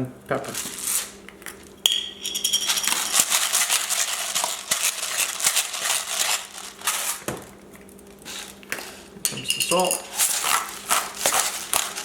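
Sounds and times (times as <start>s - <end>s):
pepper rattling from container: 2.2s - 6.9s.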